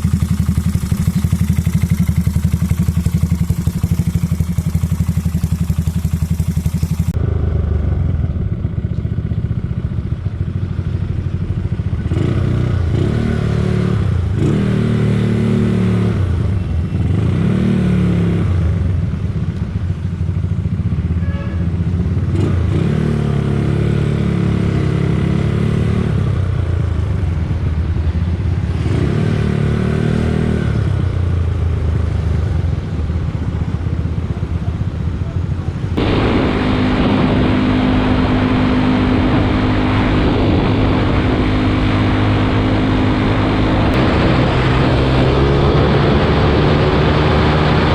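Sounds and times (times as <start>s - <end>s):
scooter engine revving: 0.0s - 7.7s, 12.0s - 18.7s, 36.0s - 47.9s.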